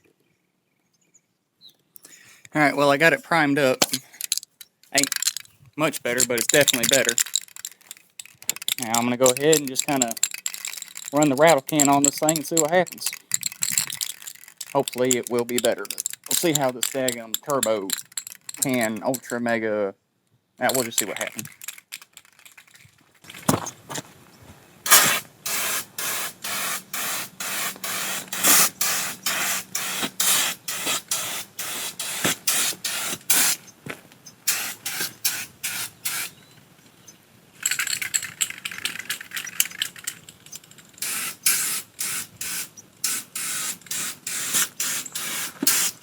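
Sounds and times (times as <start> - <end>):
spray paint can spraying: 3.7 - 19.4, 20.7 - 22.8, 24.9 - 33.6, 34.5 - 36.3, 41.0 - 46.0.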